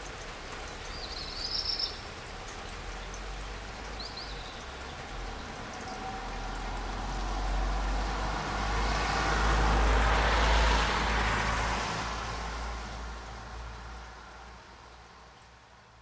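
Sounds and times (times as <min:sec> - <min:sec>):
car tyres hissing on wet street: 0:00.0 - 0:16.0
steady rain: 0:00.0 - 0:16.0.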